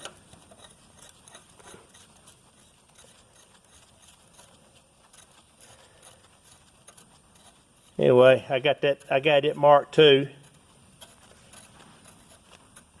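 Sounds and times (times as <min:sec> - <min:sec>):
metal bolt clicking and scraping: 0:00.0 - 0:08.0.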